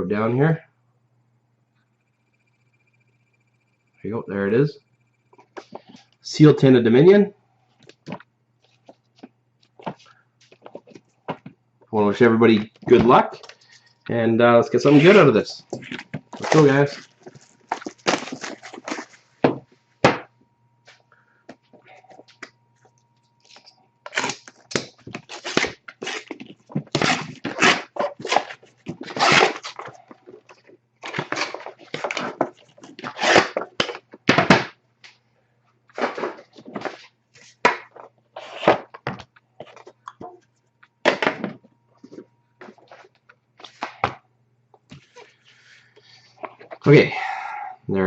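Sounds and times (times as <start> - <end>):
packaging rustling and tearing: 14.9 - 19.3, 23.5 - 34.1.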